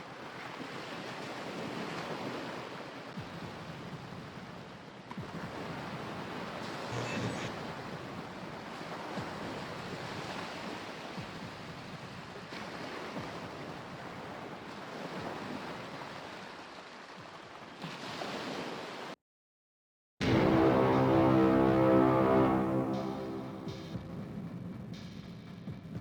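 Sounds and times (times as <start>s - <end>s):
music: 20.2s - 26.0s.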